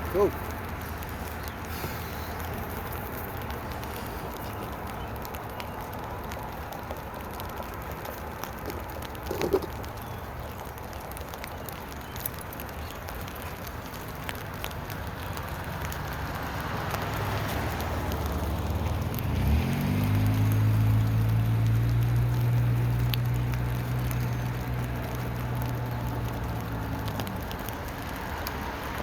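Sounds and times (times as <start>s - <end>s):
rain pattering: 0.0s - 29.0s
low engine hum: 14.3s - 29.0s
engine hum rising in pitch: 18.4s - 27.2s.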